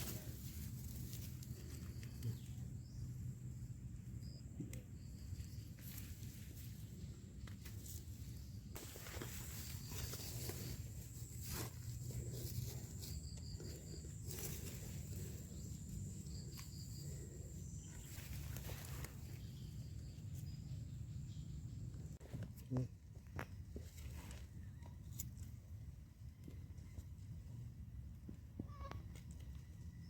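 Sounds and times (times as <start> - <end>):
rustling: 0.0 - 2.6, 5.5 - 19.7
footsteps outdoors: 7.4 - 15.6.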